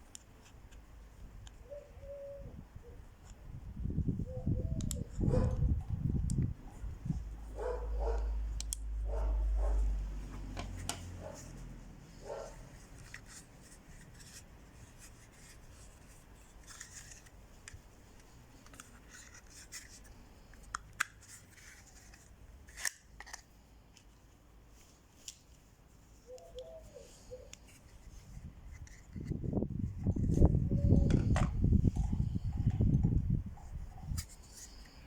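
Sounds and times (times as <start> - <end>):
plastic sheath clicks: 20.6 - 21.4, 22.1 - 23.5.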